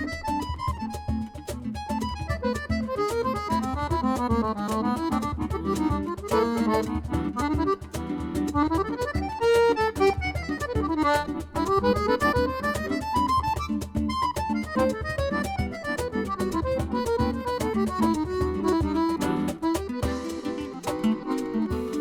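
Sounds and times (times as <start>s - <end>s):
accordion playing fast melody: 0.0s - 22.0s.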